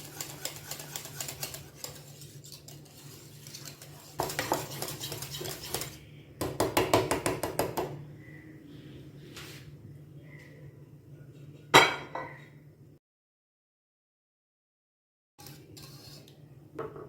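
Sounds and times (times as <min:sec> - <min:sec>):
whisk clicking against metal pan: 0:00.0 - 0:06.0.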